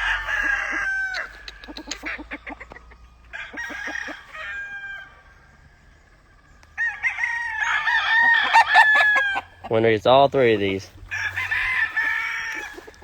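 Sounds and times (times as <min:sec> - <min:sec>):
roosters crowing: 0:00.0 - 0:13.0
rapid clucking: 0:01.2 - 0:03.0.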